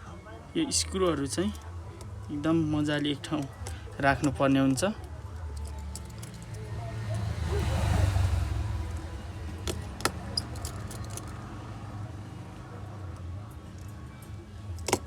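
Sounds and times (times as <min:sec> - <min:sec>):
light metal clicks of screws and tools: 0:03.3 - 0:04.4, 0:05.0 - 0:06.7, 0:08.9 - 0:11.4, 0:12.9 - 0:15.0.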